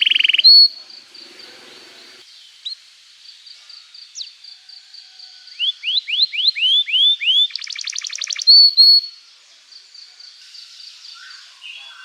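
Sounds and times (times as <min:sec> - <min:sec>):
canary singing: 0:00.0 - 0:02.2, 0:05.5 - 0:09.2.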